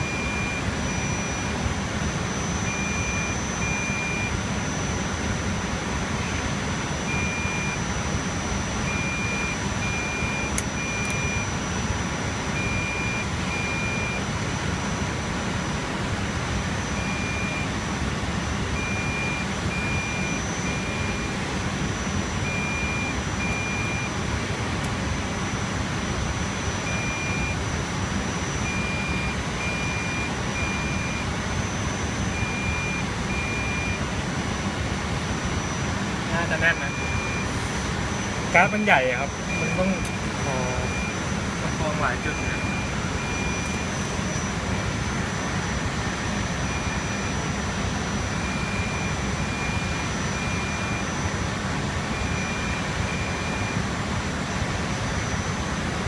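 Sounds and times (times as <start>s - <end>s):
faint high beeps: 0.0s - 1.6s, 2.3s - 5.1s, 6.2s - 15.0s, 16.8s - 17.8s, 18.8s - 24.2s, 26.4s - 27.7s, 28.3s - 34.1s, 35.4s - 51.4s, 52.1s - 53.8s
server fans whirring: 0.0s - 56.0s.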